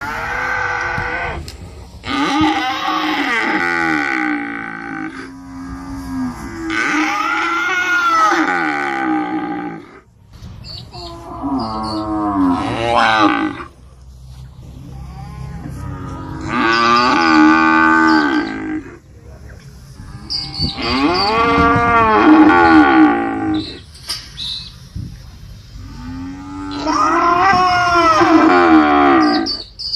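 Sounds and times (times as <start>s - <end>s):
cow mooing: 2.0s - 10.0s, 11.2s - 13.7s, 14.9s - 19.0s, 20.2s - 23.8s, 25.8s - 29.6s.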